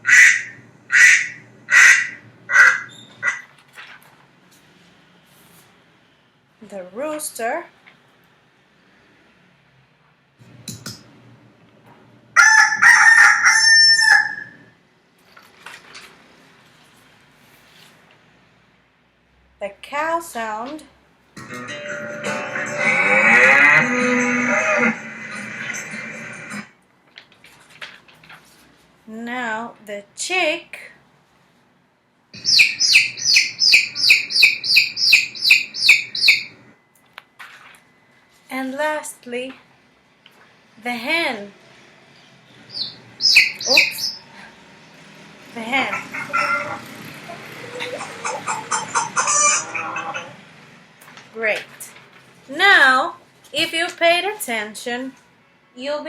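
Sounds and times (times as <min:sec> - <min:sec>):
rooster crowing: 0:12.4 - 0:14.7
chick peeping: 0:32.4 - 0:36.6, 0:42.7 - 0:44.4, 0:45.9 - 0:50.4.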